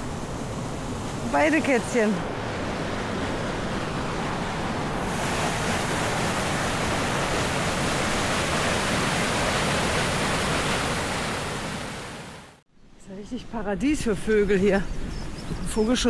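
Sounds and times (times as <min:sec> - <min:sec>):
rushing wind: 0:00.0 - 0:12.6, 0:13.4 - 0:16.0.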